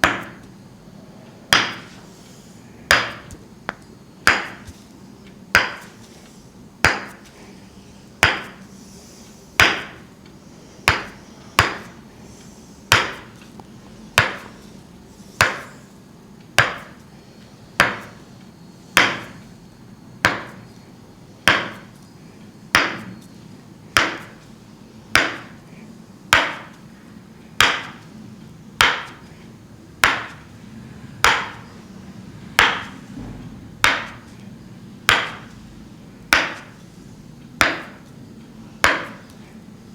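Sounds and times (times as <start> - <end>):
wooden mallet tapping wooden wedge: 1.5 - 2.0, 2.9 - 4.8, 5.5 - 5.9, 6.8 - 7.3, 8.2 - 8.6, 9.6 - 10.0, 10.9 - 11.9, 12.9 - 13.3, 14.2 - 14.5, 15.4 - 15.7, 16.6 - 17.0, 17.8 - 18.2, 19.0 - 19.4, 20.2 - 20.6, 21.5 - 21.9, 22.8 - 23.2, 24.0 - 24.4, 25.1 - 25.6, 26.3 - 26.8, 27.6 - 28.0, 28.8 - 29.3, 30.0 - 30.4, 31.2 - 31.6, 32.6 - 32.9, 33.8 - 34.3, 35.1 - 35.5, 36.3 - 36.7, 37.6 - 38.0, 38.8 - 39.3.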